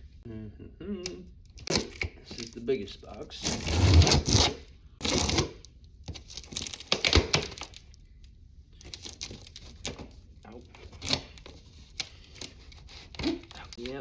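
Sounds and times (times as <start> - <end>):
cardboard and tape tearing: 3.4 - 7.8, 8.8 - 14.0.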